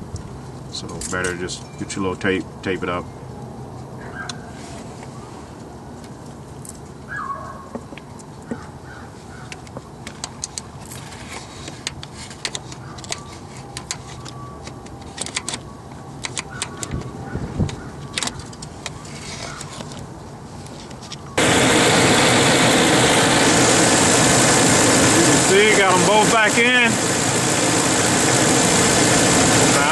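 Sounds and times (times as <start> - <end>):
hand tools clicking and tapping: 11.7 - 19.7
truck engine running loud: 21.4 - 29.9.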